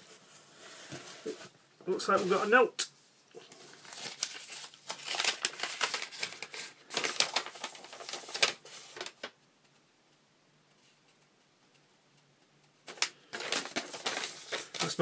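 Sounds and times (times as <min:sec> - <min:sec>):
packing paper rustling: 0:00.0 - 0:02.6, 0:03.4 - 0:09.4, 0:12.9 - 0:15.0.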